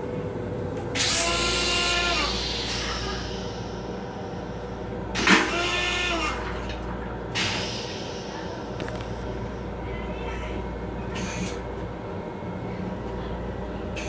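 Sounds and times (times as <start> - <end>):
train low rumble: 0.0 - 14.0.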